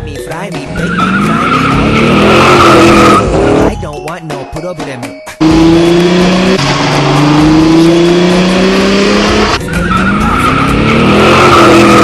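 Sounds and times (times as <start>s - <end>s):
sports car engine accelerating: 0.9s - 3.7s, 5.4s - 12.0s
tyre squeal: 9.6s - 12.0s.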